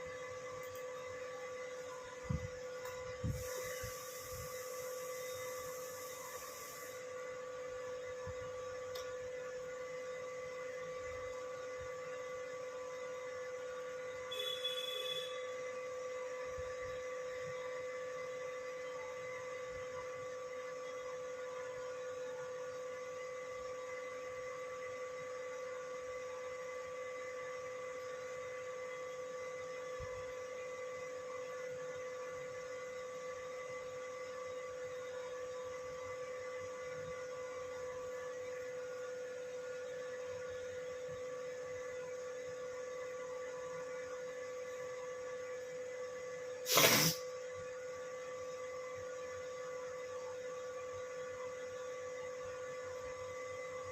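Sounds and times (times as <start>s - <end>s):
brief loud burst: 46.7s - 47.2s.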